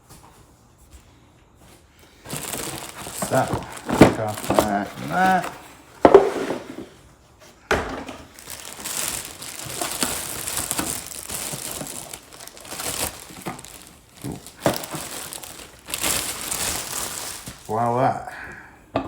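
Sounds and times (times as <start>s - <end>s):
packaging crinkling: 2.2s - 5.8s, 8.2s - 18.0s.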